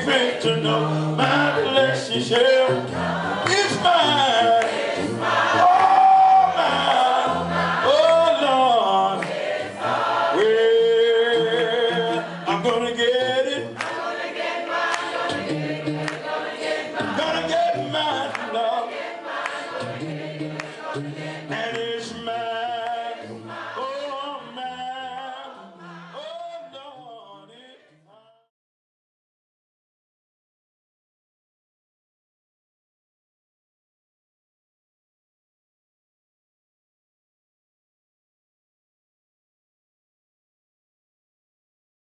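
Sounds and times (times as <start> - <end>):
choir singing gospel song: 0.0 - 28.4.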